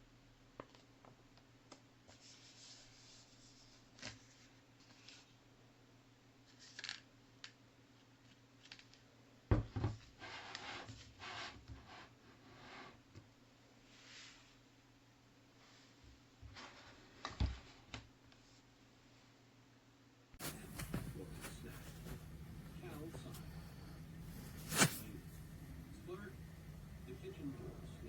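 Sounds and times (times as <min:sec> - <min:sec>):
rustling: 0:20.4 - 0:28.0.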